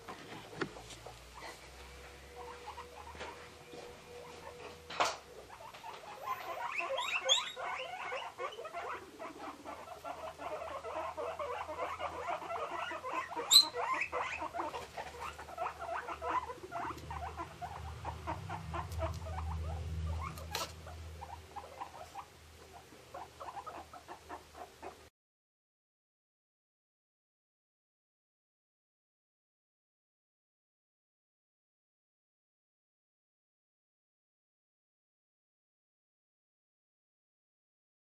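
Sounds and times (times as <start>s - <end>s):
guinea pigs squeaking: 0.4s - 25.1s.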